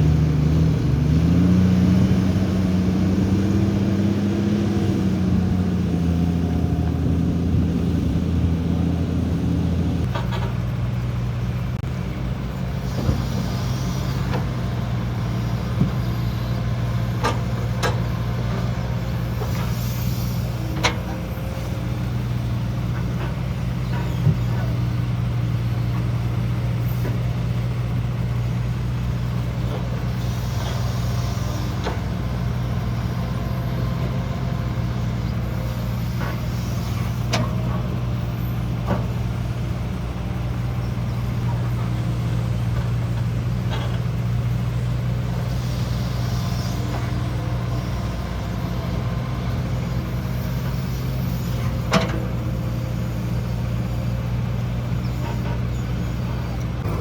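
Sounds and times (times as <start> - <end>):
diesel machinery running: 0.0 - 57.0
metal clanks and knocks: 10.0 - 10.7.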